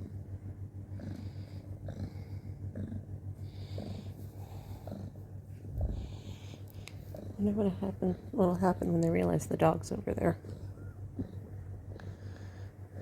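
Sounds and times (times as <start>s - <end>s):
cat purring: 0.0s - 13.0s.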